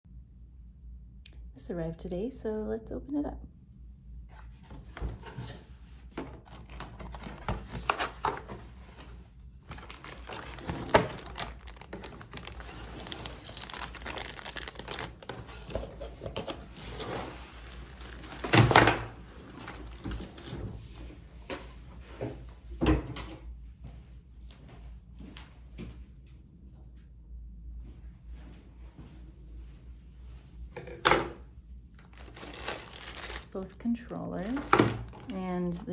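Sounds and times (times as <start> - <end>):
packaging crinkling and tearing: 6.4 - 20.6, 32.0 - 33.8, 34.4 - 35.8.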